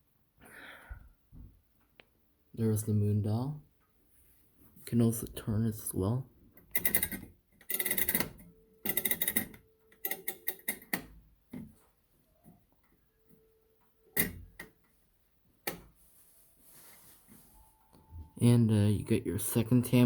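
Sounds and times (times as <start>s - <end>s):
clock dial clicking and rattling: 6.6s - 11.1s, 14.2s - 14.8s.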